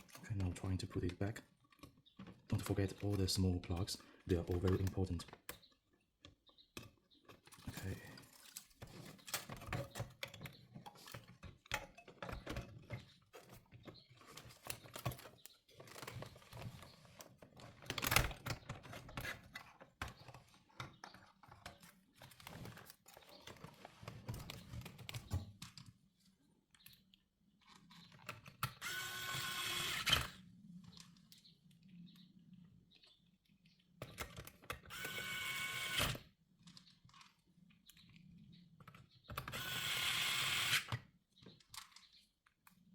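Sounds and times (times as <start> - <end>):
small motor whining: 28.8 - 30.4, 34.9 - 36.2, 39.5 - 41.0.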